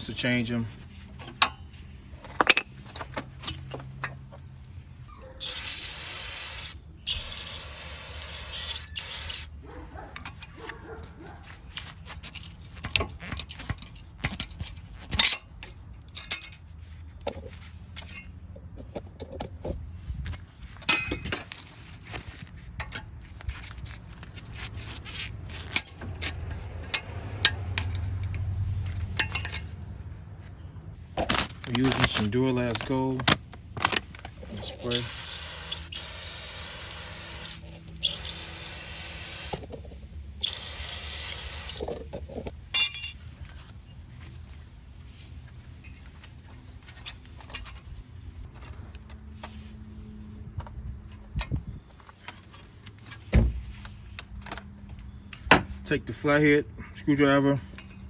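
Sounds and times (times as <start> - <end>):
aerosol spray can hissing: 5.4 - 9.5, 34.9 - 39.6, 40.4 - 41.8.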